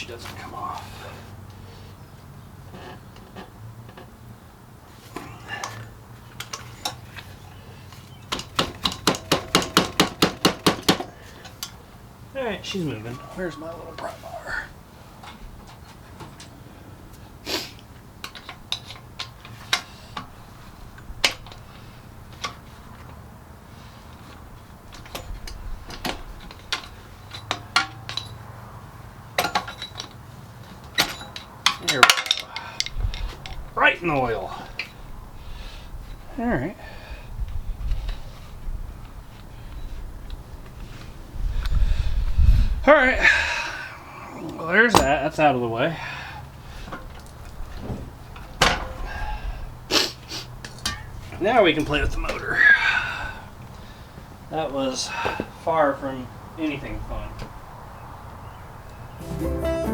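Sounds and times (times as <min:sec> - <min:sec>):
sharp metallic taps: 0:08.3 - 0:11.7
pry bar clinking on metal: 0:08.3 - 0:11.8, 0:31.0 - 0:33.6, 0:44.9 - 0:45.4, 0:50.6 - 0:51.2.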